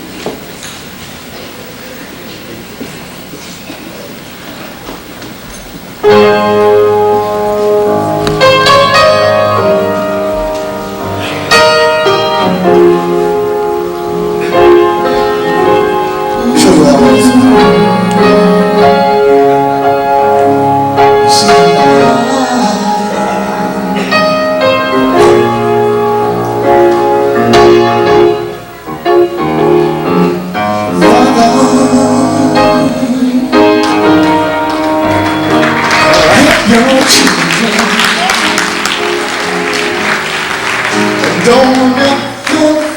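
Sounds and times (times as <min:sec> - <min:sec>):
slow gospel music on keyboard: 0:00.0 - 0:42.9.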